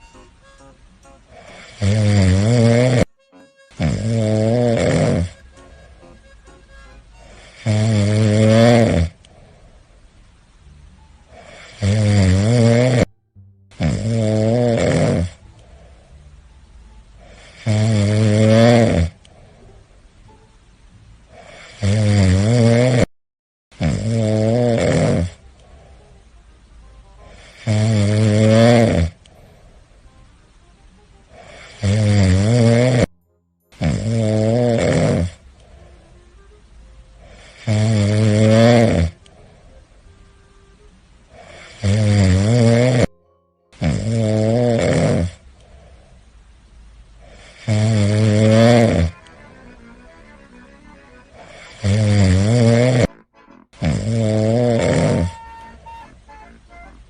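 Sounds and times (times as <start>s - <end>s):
cat snoring: 1.3s - 3.1s, 3.8s - 5.4s, 7.2s - 9.8s, 11.3s - 13.1s, 13.8s - 16.2s, 17.2s - 19.7s, 21.3s - 23.1s, 23.8s - 26.1s, 27.2s - 29.8s, 31.3s - 33.1s, 33.8s - 36.5s, 37.2s - 39.9s, 41.3s - 43.2s, 43.8s - 46.1s, 47.2s - 49.4s, 51.3s - 53.1s, 53.8s - 56.0s.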